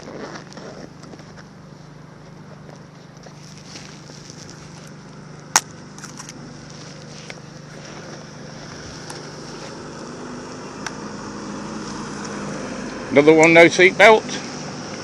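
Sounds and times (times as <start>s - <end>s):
vehicle engine approaching: 0.0s - 15.0s.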